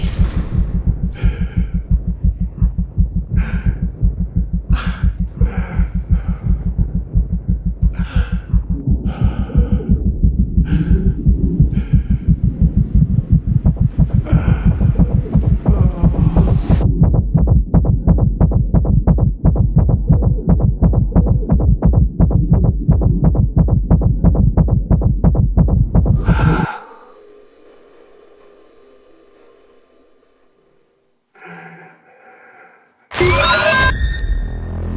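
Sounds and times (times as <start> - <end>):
short sharp burst: 0.0 - 2.8
faint hum: 0.0 - 17.1
rapid pounding heartbeat: 0.0 - 26.7.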